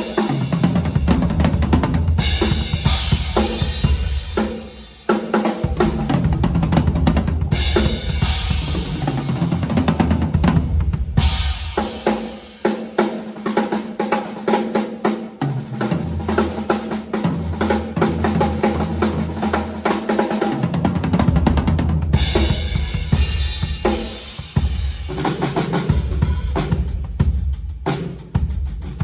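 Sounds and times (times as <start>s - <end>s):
drum kit strokes: 0.0s - 29.0s
cymbal crashes: 25.9s - 27.0s.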